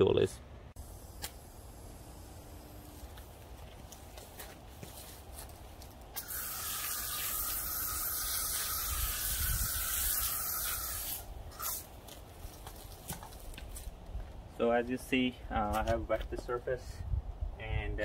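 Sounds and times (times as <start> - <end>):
water spraying onto concrete: 6.2 - 11.8.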